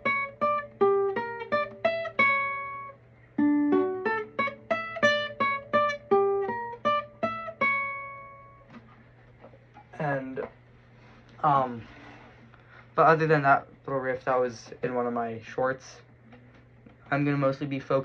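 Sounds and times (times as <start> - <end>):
classical guitar single-note riff: 0.0 - 8.7.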